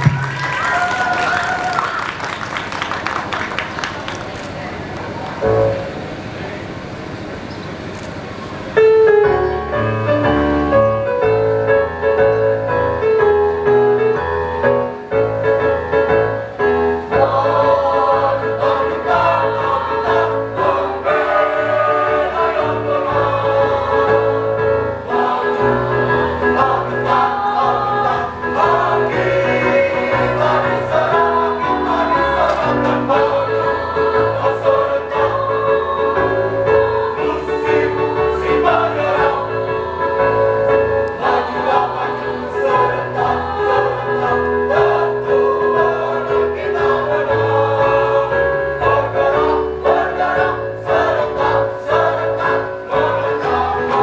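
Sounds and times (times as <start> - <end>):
accompaniment with bass line: 0.0 - 0.8
choir singing: 17.0 - 54.0.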